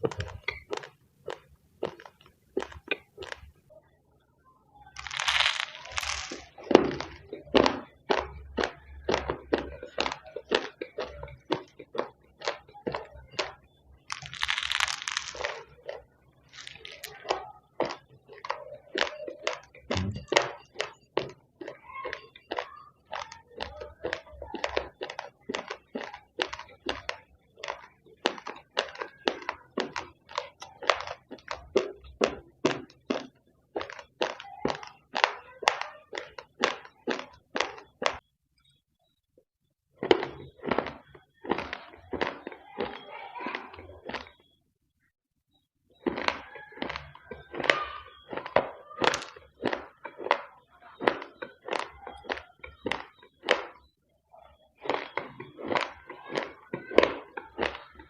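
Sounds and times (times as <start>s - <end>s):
raw rice being chewed: 0.0s - 3.6s, 4.9s - 38.7s, 40.0s - 44.6s, 46.0s - 58.0s.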